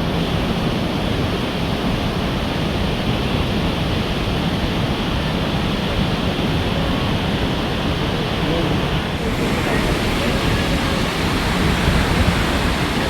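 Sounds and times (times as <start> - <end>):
waterfall roaring: 7.0 - 13.0
wind buffeting microphone: 8.5 - 13.0.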